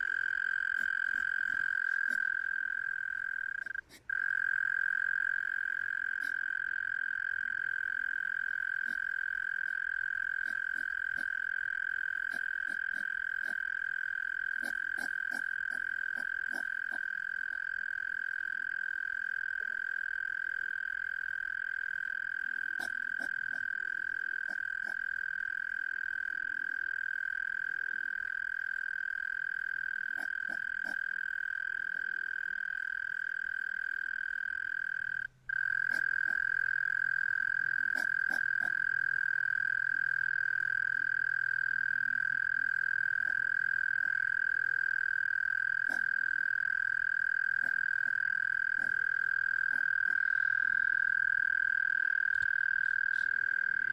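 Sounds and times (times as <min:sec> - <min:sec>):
hedgehogs whistling: 0:00.0 - 0:18.7, 0:34.4 - 0:53.9.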